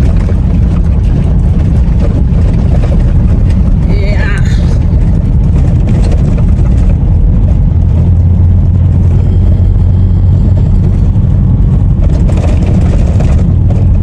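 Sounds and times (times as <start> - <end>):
vehicle engine and road rumble: 0.0 - 14.0.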